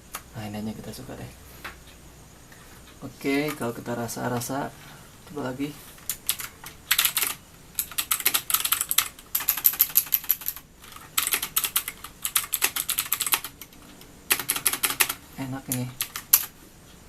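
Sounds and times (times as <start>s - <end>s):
clicky keyboard typing: 6.0s - 16.5s.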